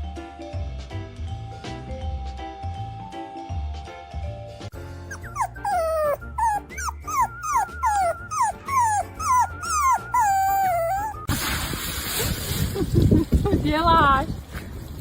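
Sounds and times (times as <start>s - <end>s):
dog crying in short high cries: 5.1s - 11.3s.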